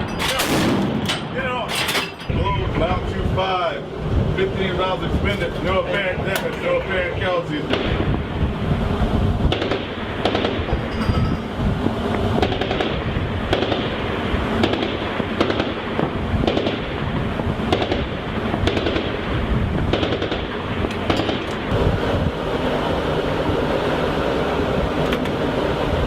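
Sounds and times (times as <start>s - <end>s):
wind noise: 0.0s - 26.0s
gunshots: 0.2s - 2.0s, 7.7s - 8.2s, 9.5s - 10.8s, 12.4s - 17.0s, 17.7s - 21.5s.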